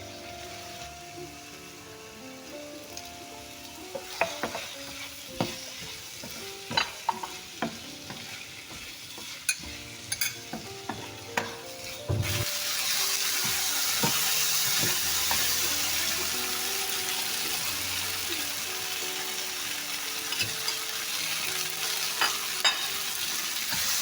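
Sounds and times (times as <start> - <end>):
loud steady sizzle: 0.0 - 24.0
utensil scraping frying pan: 3.9 - 16.6.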